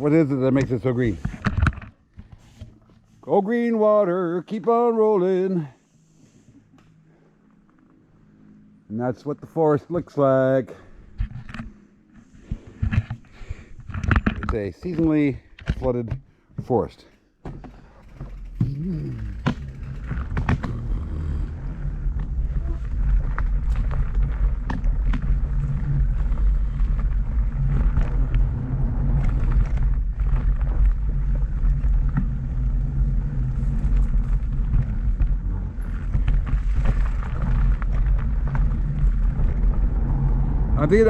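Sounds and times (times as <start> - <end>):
bike rolling over wooden boardwalk: 14.1 - 41.0.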